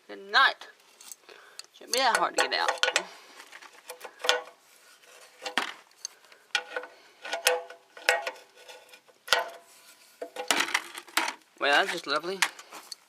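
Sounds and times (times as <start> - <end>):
hand tools clinking against metal: 1.8 - 3.2.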